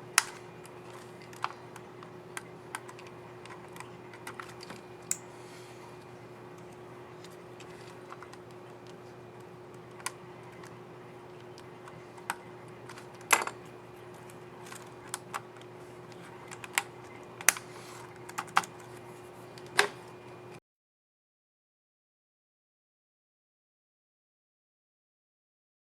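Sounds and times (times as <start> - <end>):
laptop keys clicking: 0.0 - 5.3, 5.9 - 20.2
faint steady hum: 0.0 - 20.6.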